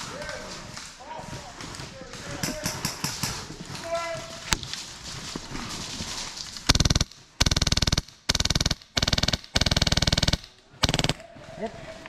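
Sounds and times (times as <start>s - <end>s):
airsoft gun firing bursts: 6.6s - 11.2s.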